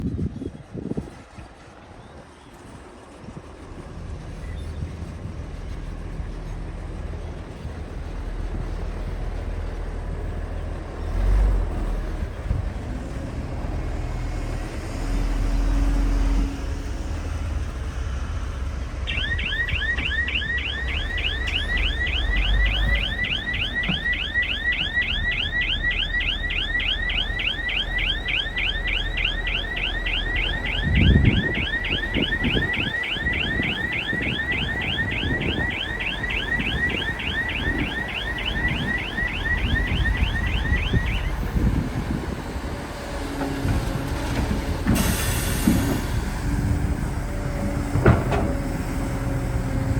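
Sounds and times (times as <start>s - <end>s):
excavator diesel engine running: 1.5s - 49.9s
warbling warning alarm: 19.0s - 42.9s.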